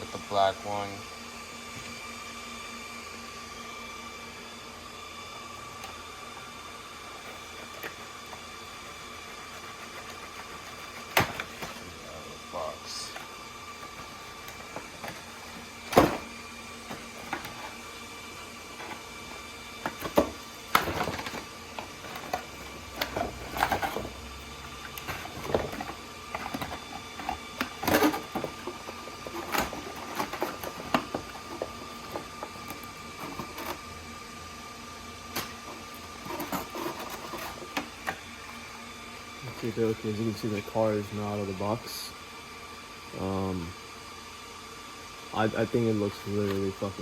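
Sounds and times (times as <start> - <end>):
cardboard and plastic packaging handled: 5.6 - 34.0, 35.2 - 41.8.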